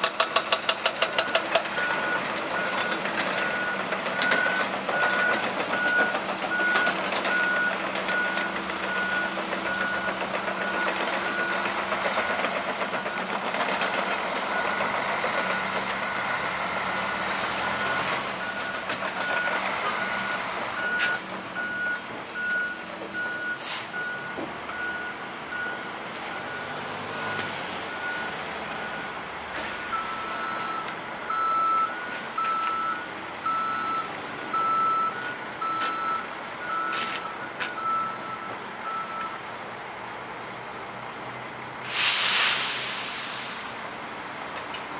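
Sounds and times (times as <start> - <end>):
heavy machinery running: 0.0 - 24.9
reversing alarm beeping: 1.2 - 11.8, 14.5 - 39.4
lower-pitched backup beeper: 14.5 - 39.4.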